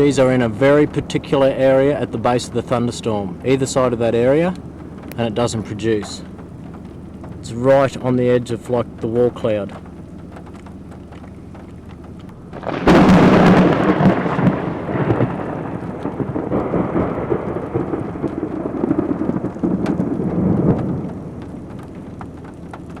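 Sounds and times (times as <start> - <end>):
steady rain: 0.0 - 23.0
thunder crack and rumble: 0.0 - 23.0.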